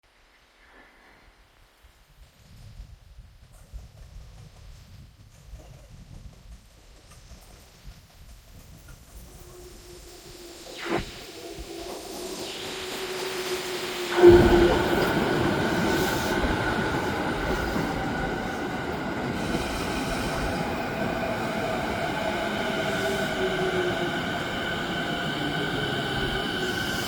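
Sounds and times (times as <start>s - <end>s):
electric train passing: 8.8s - 27.0s
wheels squealing on rail: 12.1s - 27.0s.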